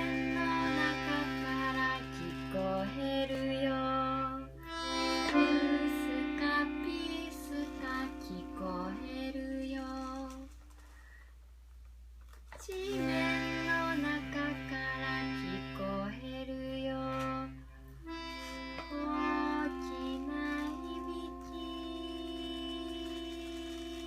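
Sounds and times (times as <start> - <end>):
held notes and chords: 0.0 - 10.3, 12.8 - 24.0.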